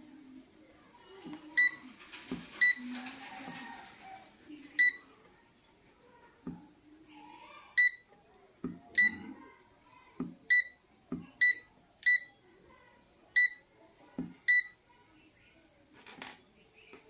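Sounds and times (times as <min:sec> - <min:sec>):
multimeter short high beeps: 0:09.0 - 0:09.2.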